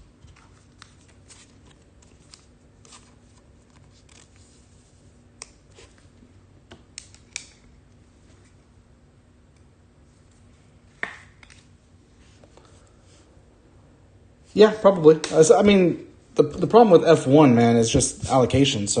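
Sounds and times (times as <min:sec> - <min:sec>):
trading cards rustling: 0:00.1 - 0:06.2.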